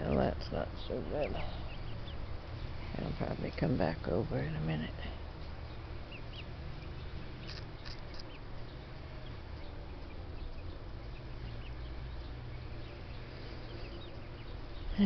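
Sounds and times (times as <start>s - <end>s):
steady low rumble: 0.0s - 15.0s
faint bird chirps: 5.7s - 15.0s.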